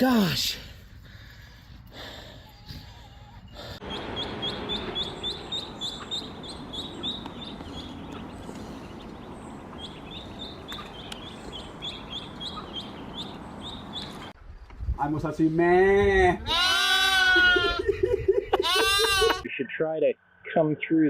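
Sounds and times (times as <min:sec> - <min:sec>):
chicks peeping: 0:03.8 - 0:14.3.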